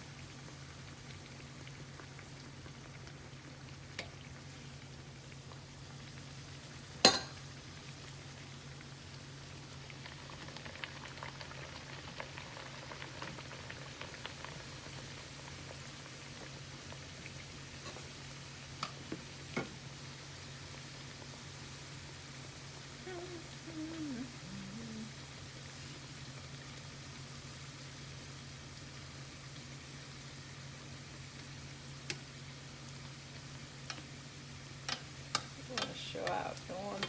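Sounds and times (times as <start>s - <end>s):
dough sizzling in hot oil: 0.0s - 37.0s.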